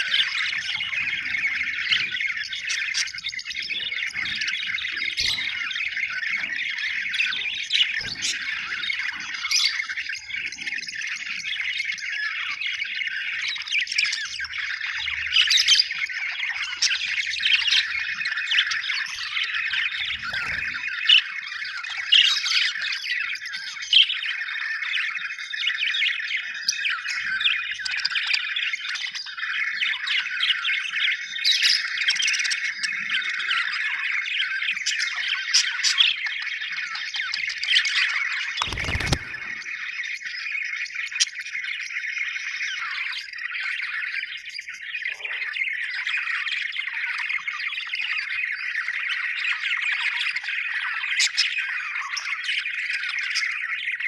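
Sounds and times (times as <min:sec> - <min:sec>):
budgerigars chattering and warbling: 0:00.0 - 0:54.0
sharp bird chirps: 0:00.0 - 0:54.0.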